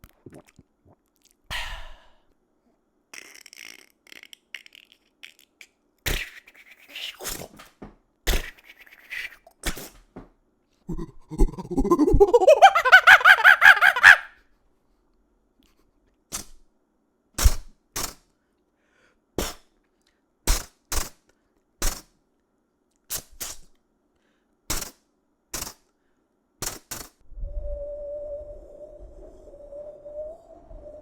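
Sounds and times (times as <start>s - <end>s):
man making warbling mouth sounds: 0.0s - 0.6s, 3.2s - 7.4s, 8.3s - 9.6s, 10.9s - 14.2s
sharp mouth pops: 6.1s - 6.5s, 8.3s - 8.7s.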